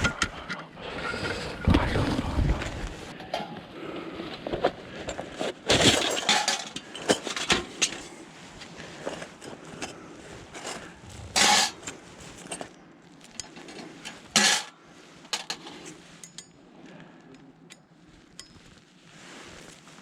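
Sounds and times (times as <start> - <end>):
metallic clinks of camp gear: 8.9 - 14.5, 15.2 - 18.9.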